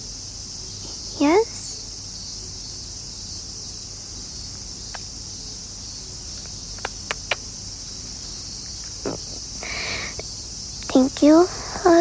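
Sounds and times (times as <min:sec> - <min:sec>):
cicadas droning: 0:00.0 - 0:12.0
short sharp clicks: 0:06.4 - 0:07.5.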